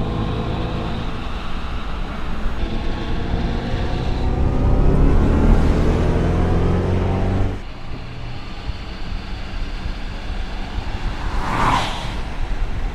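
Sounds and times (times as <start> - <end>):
electric car drive hum: 0.0 - 12.9
low rumble: 7.6 - 12.9
short whoosh: 10.6 - 12.9.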